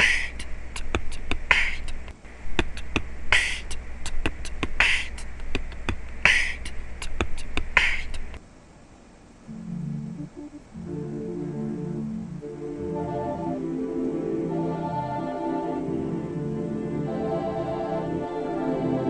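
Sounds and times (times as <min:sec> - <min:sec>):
low steady hum: 0:00.0 - 0:19.0
soft instrumental music: 0:09.5 - 0:19.0.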